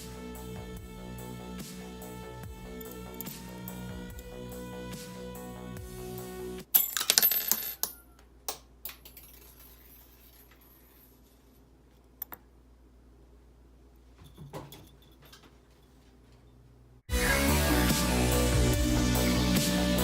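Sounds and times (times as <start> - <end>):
small metal parts clicking and tapping: 6.8 - 11.0.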